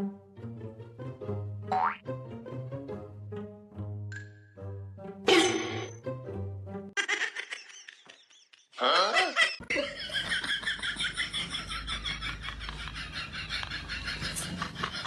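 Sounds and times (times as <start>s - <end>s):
laughter: 7.0s - 15.0s.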